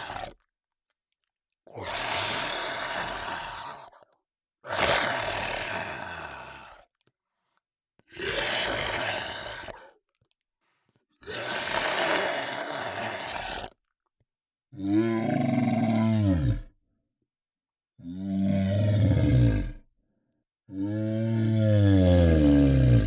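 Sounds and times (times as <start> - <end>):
harsh raspy creature roars: 0.0 - 0.4, 1.7 - 4.0, 4.6 - 6.8, 8.1 - 9.9, 11.2 - 13.8, 14.8 - 16.8, 18.0 - 19.8, 20.7 - 23.0.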